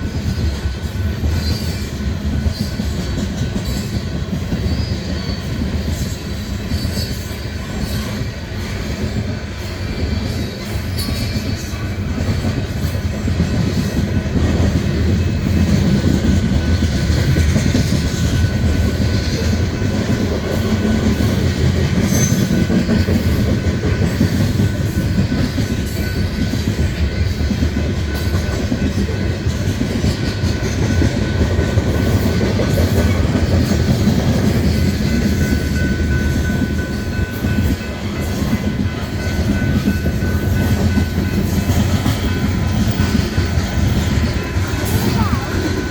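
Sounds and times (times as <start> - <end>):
train rumble with wheel clatter: 0.0 - 45.9.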